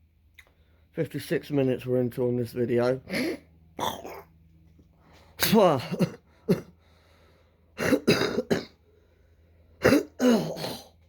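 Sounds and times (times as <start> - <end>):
man coughing: 3.0 - 4.3, 5.4 - 6.8, 7.8 - 8.8, 9.8 - 11.0
man clearing his throat: 3.1 - 4.3, 5.4 - 6.8, 7.8 - 8.8, 9.8 - 11.0.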